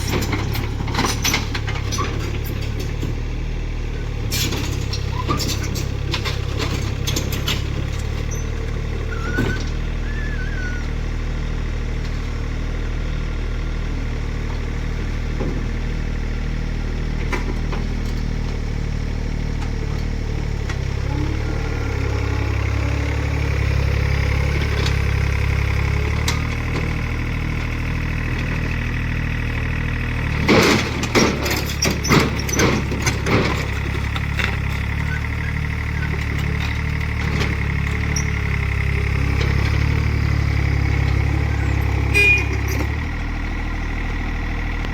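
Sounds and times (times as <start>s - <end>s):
excavator engine running: 0.0s - 44.9s.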